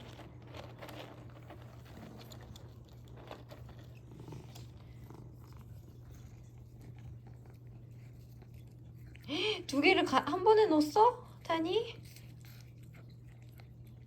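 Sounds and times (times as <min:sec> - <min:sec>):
cat purring: 0:00.0 - 0:10.2.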